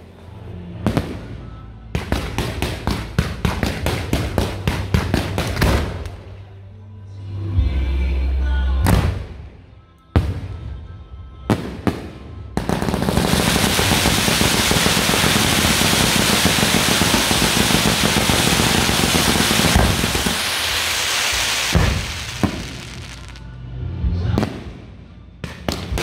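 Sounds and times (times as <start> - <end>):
fireworks bangs: 0.8 - 6.2, 11.5 - 23.4
dense firecracker crackle: 2.0 - 6.3, 11.8 - 23.5.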